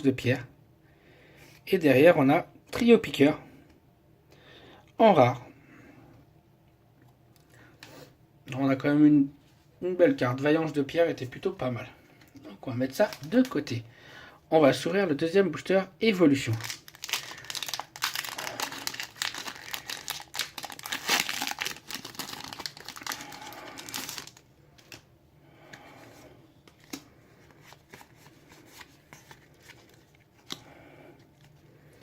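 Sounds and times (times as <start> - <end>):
foil wrapper tearing and crinkling: 16.5 - 25.0.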